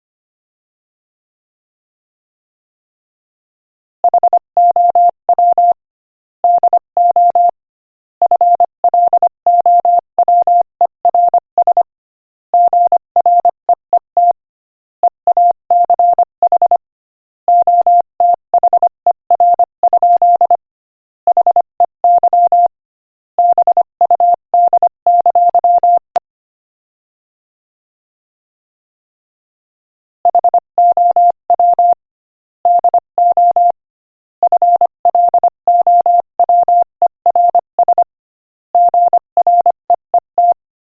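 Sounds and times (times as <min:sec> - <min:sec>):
morse code beeps: 0:04.1 - 0:05.8, 0:06.5 - 0:07.6, 0:08.2 - 0:11.9, 0:12.6 - 0:14.4, 0:15.3 - 0:16.8, 0:17.5 - 0:20.6, 0:21.3 - 0:22.7, 0:23.4 - 0:26.1, 0:30.3 - 0:32.0, 0:32.7 - 0:33.8, 0:34.4 - 0:38.1, 0:38.8 - 0:40.6.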